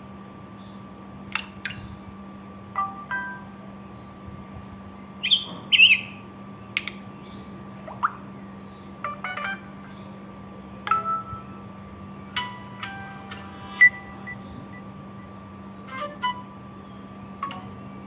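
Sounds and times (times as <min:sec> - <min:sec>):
faint steady hum: 0:00.0 - 0:18.0
phone ringtone chirps and beeps: 0:02.8 - 0:03.5, 0:09.1 - 0:10.0, 0:10.9 - 0:11.6, 0:12.3 - 0:14.9.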